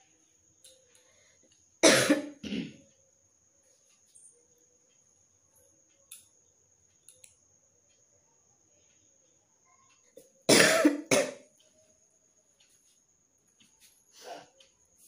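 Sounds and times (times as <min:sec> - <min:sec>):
person coughing: 0:01.8 - 0:02.8, 0:10.5 - 0:11.4.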